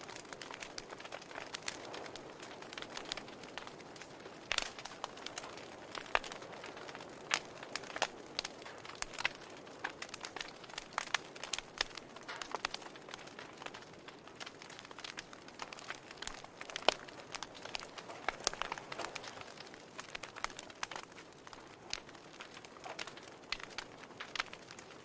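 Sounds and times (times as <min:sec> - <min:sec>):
fire crackling and popping: 0:00.0 - 0:25.0
soft fire hiss: 0:00.0 - 0:25.0.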